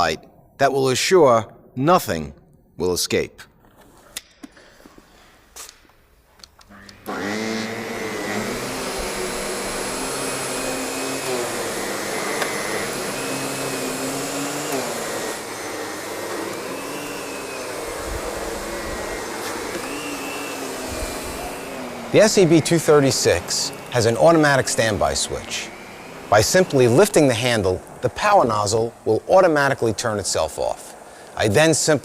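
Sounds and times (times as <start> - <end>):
vacuum cleaner running with whine: 7.0 - 32.0.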